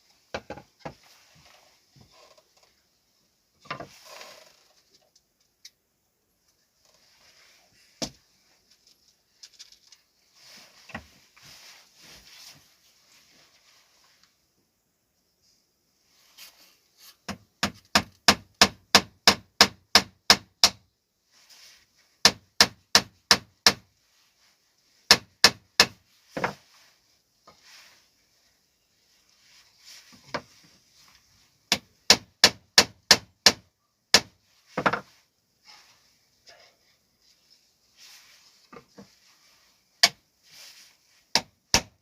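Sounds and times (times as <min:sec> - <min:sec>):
hammer driving nails into wood: 0:17.3 - 0:20.8, 0:22.2 - 0:23.8, 0:25.1 - 0:26.6, 0:31.7 - 0:35.1, 0:41.3 - 0:42.0.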